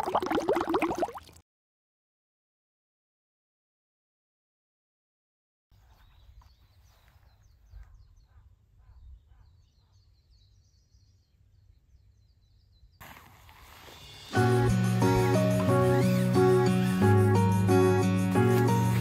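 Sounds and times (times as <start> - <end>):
small birds chirping: 5.8 - 18.9
loud music: 14.3 - 19.0.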